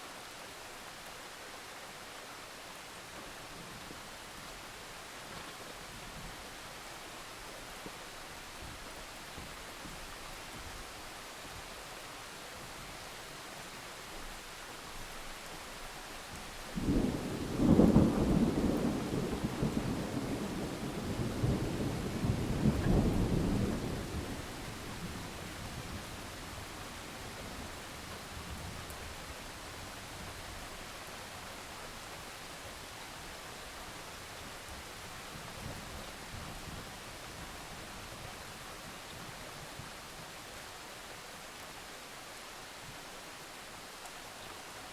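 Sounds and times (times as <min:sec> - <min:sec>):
steady rain hiss: 0:00.0 - 0:44.9
thunder rumble: 0:16.8 - 0:26.8.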